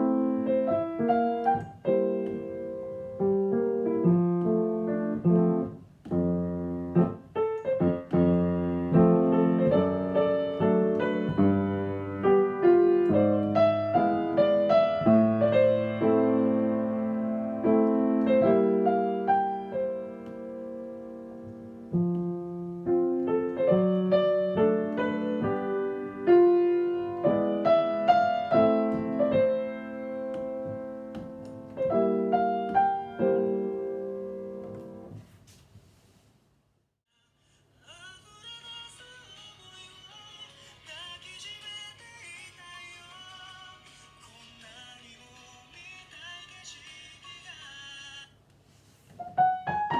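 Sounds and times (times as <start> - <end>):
solo piano playing pop song: 0.0 - 35.2, 49.2 - 49.9.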